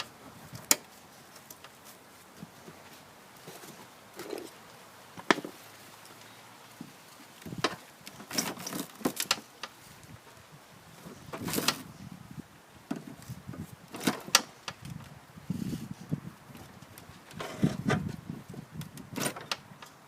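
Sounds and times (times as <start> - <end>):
knocks and scrapes on axle: 11.0 - 11.9, 16.6 - 18.3, 19.0 - 20.0.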